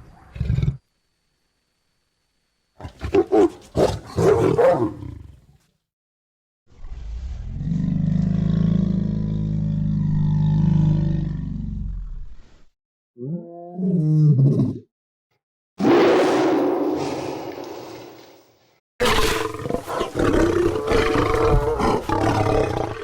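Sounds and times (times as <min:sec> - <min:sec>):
deep creature roar: 0:06.7 - 0:12.4, 0:19.0 - 0:23.0
creature growling: 0:19.0 - 0:23.0.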